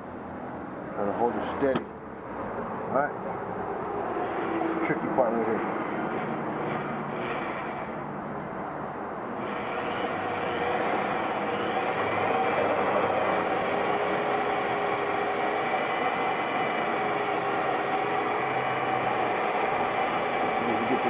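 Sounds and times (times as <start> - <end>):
electric drill grinding glass: 4.1 - 8.1, 9.3 - 21.0.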